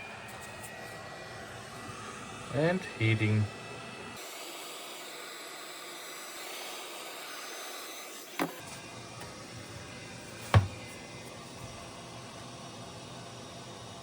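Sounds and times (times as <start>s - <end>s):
heat gun blowing: 4.2s - 11.5s
sharp knocks: 10.5s - 10.8s.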